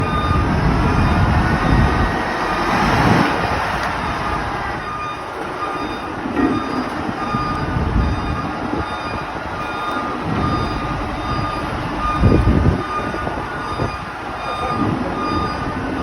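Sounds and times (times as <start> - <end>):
heavy machine clattering: 0.0 - 16.0.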